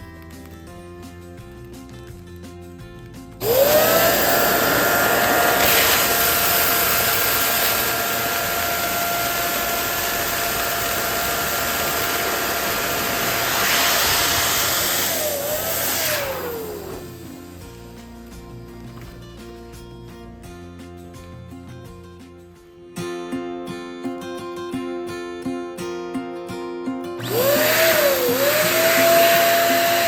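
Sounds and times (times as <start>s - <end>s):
electric balloon pump whining: 3.4s - 17.8s, 27.2s - 30.0s.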